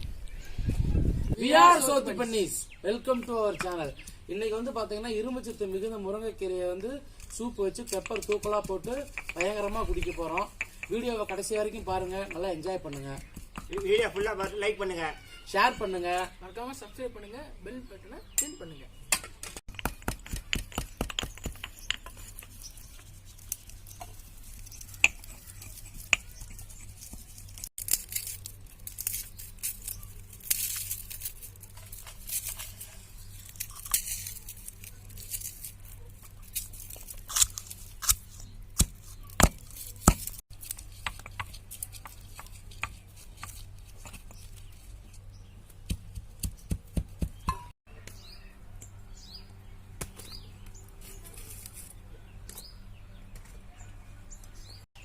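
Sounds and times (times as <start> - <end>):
rustling and tearing: 22.0 - 45.3, 50.9 - 52.0.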